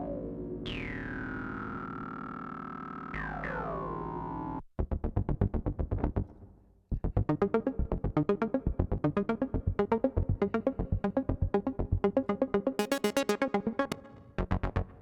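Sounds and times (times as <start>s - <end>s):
synthesizer held chords: 0.0s - 4.6s, 7.1s - 15.0s
synthesizer plucked note sequence: 0.0s - 6.1s, 7.0s - 15.0s.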